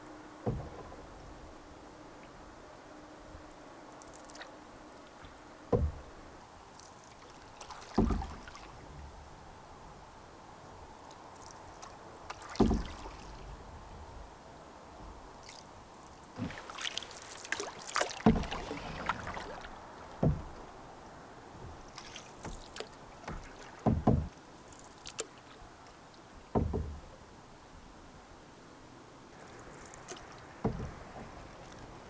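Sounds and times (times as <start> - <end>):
water splashing around paddle: 0.2 - 27.8, 29.3 - 32.0
sharp low knocks: 0.4 - 1.4, 5.3 - 6.2, 20.2 - 20.8, 23.2 - 24.4, 26.5 - 27.1, 30.6 - 31.4.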